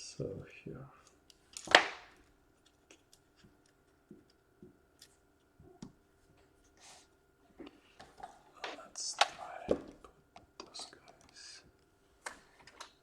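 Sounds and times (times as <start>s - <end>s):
faint steady hum: 0.0s - 13.0s
small clicks and taps: 2.6s - 6.0s.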